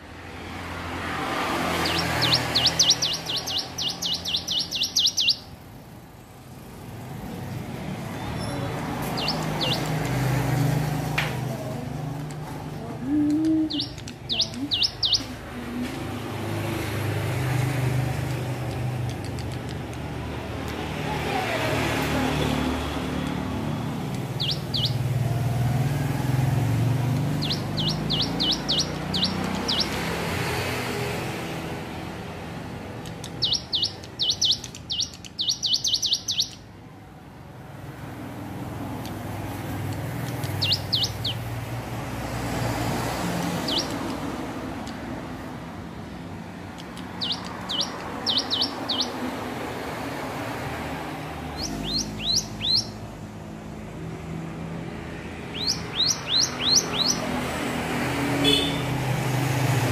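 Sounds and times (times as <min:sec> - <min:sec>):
bird chirping: 0:01.4 - 0:05.7, 0:07.9 - 0:11.7, 0:12.7 - 0:15.8, 0:23.1 - 0:25.6, 0:26.2 - 0:30.3, 0:32.9 - 0:36.8, 0:39.0 - 0:41.8, 0:43.4 - 0:44.2, 0:46.8 - 0:49.4, 0:51.4 - 0:53.1, 0:55.4 - 0:57.4.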